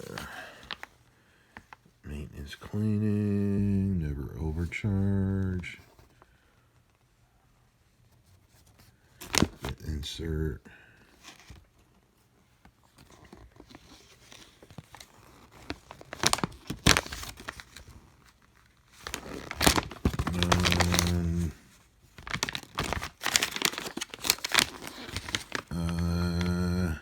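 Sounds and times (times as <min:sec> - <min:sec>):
paper crinkling: 0:00.0 - 0:01.0, 0:08.1 - 0:09.9, 0:12.6 - 0:27.0.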